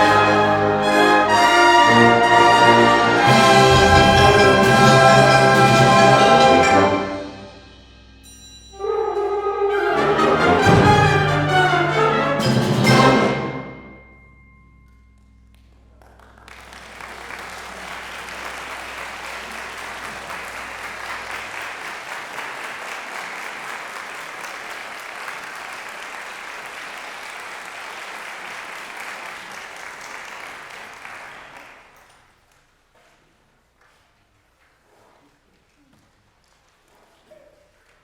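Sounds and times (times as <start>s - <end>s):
concert band chord: 0.0s - 8.2s, 9.8s - 14.2s
audience applause: 0.8s - 6.9s, 16.0s - 32.2s.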